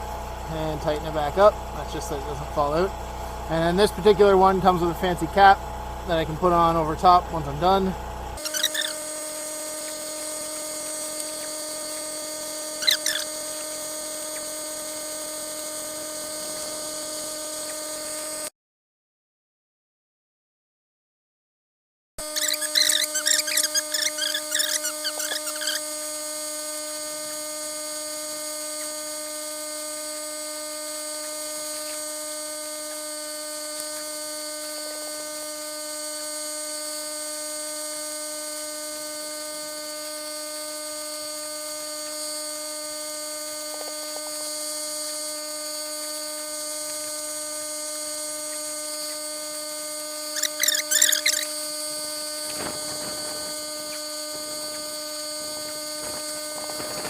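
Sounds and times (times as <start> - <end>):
high-pitched generator whine: 0.0 - 18.5, 22.2 - 57.0
high fluttering chirps: 8.4 - 14.9, 22.2 - 26.9, 50.1 - 57.0.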